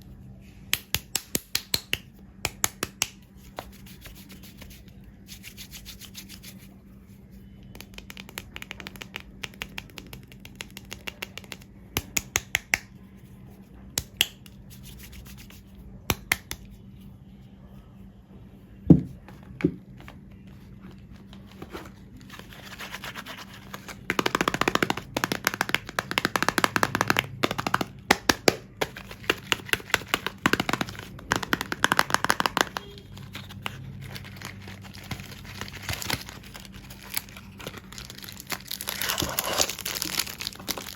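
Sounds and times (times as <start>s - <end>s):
taps and scratches: 20.8s - 37.8s
wrapping crinkling: 28.9s - 40.9s.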